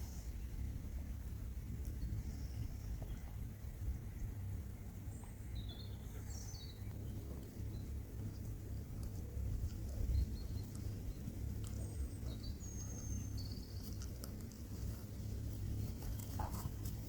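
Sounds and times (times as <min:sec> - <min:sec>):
steady low rumble: 0:00.0 - 0:17.0
faint high bird chirps: 0:05.2 - 0:08.0.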